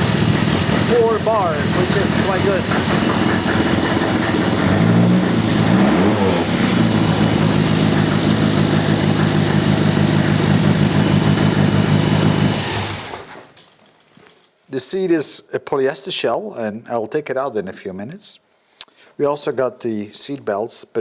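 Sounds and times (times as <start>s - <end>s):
racing car engine idling: 0.0s - 12.7s.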